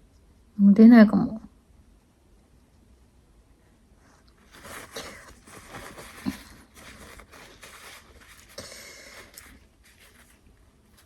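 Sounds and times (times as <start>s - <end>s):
paper strip rustling in nostril: 4.3s - 11.0s.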